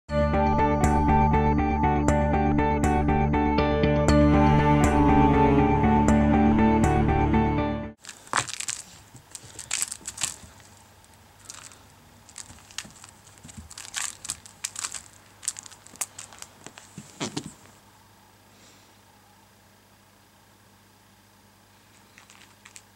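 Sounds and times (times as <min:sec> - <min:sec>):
cat claws scratching: 0:08.0 - 0:17.7, 0:22.1 - 0:22.9.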